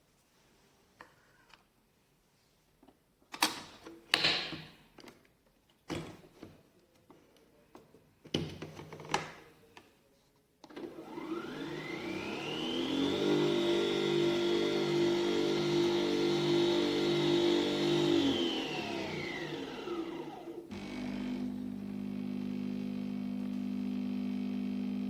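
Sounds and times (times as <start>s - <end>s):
coffee machine motor whine: 10.9s - 25.0s.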